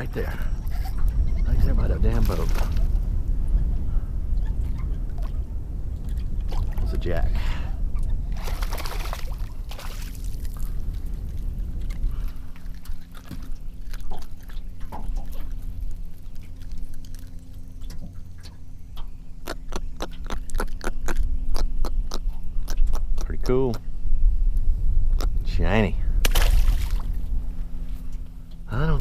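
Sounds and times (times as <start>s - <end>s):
faint steady hum: 0.0s - 29.0s
wind buffeting microphone: 0.0s - 29.0s
fish splashing in water: 8.3s - 11.0s, 26.2s - 27.2s.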